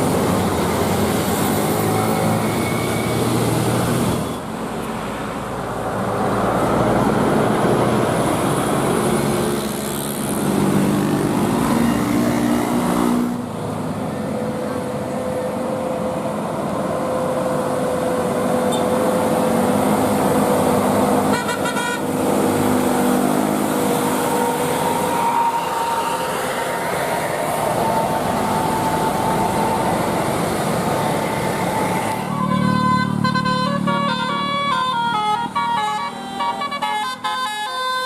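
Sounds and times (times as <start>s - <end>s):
heavy vehicle engine: 0.0s - 38.0s
traffic noise: 0.0s - 38.0s
vehicle horn: 21.3s - 22.1s, 32.3s - 38.0s.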